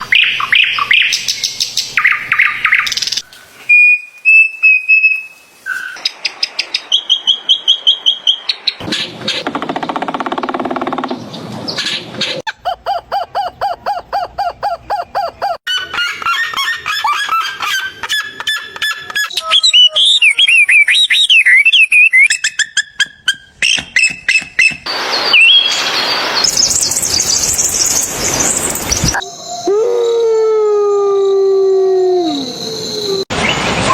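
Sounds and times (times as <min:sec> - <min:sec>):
warbling and squawking bird calls: 0:05.7 - 0:25.5
rapid repeated chirps: 0:08.8 - 0:15.6.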